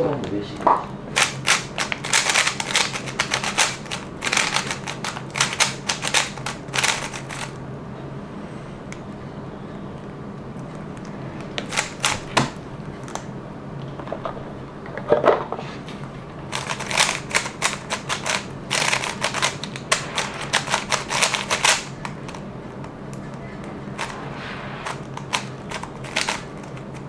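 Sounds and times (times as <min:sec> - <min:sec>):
puzzle cube layers clacking: 0:01.2 - 0:07.6, 0:16.5 - 0:24.2, 0:24.8 - 0:27.0.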